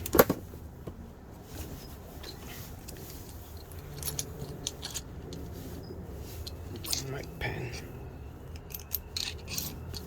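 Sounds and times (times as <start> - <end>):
small hand tools clicking and rattling: 2.2 - 5.6, 8.5 - 10.0.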